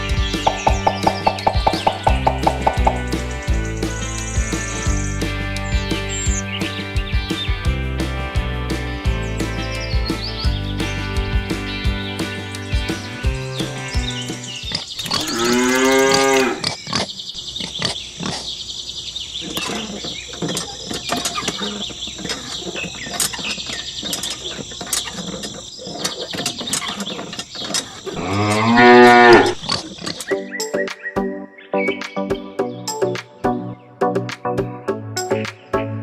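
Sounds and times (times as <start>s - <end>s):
cow mooing: 15.1s - 16.8s, 28.1s - 29.6s.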